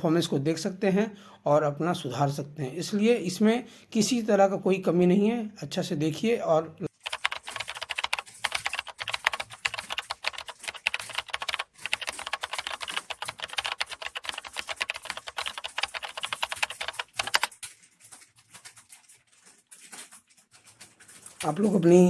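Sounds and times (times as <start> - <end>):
fast keyboard typing: 6.9 - 21.8.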